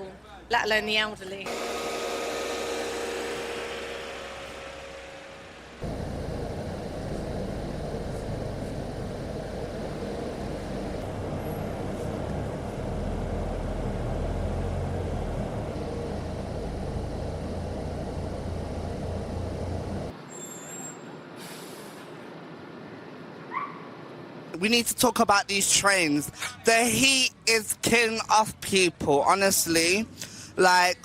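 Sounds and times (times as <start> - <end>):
background noise: 0.0 - 1.5, 19.9 - 31.0
heavy vehicle engine and road noise: 0.0 - 31.0.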